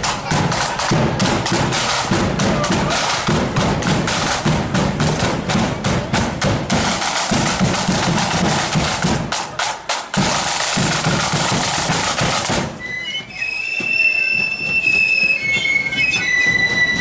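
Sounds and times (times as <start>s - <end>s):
bass drum: 0.0s - 9.4s
snare drums: 0.0s - 17.0s.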